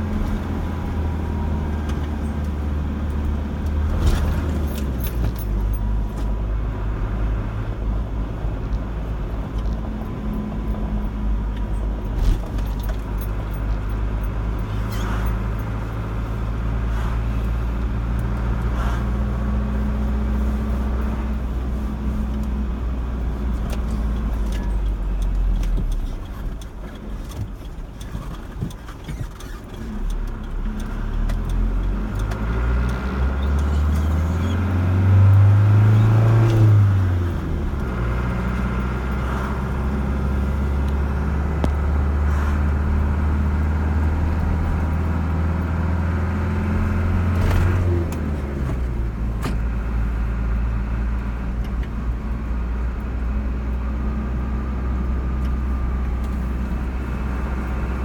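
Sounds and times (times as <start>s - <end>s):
road noise: 0.0s - 58.0s
car engine accelerating: 29.1s - 58.0s.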